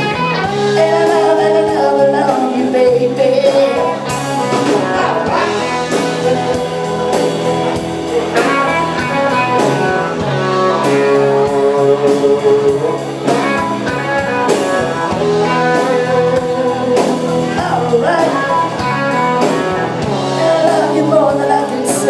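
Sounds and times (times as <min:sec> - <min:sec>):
bass guitar: 0:00.0 - 0:22.0
electric guitar lead: 0:00.0 - 0:22.0
steady drum beat: 0:03.8 - 0:21.2.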